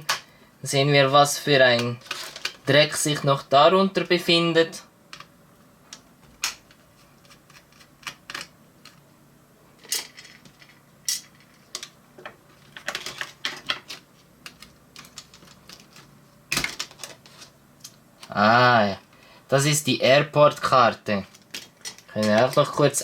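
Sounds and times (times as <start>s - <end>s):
small parts being handled: 1.7s - 2.7s, 5.9s - 9.1s, 9.8s - 18.4s, 21.2s - 23.0s.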